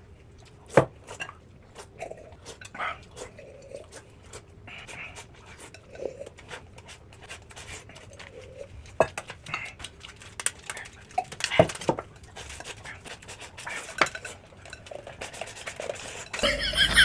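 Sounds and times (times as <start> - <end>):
utensils clinking against dishes: 13.8 - 17.0.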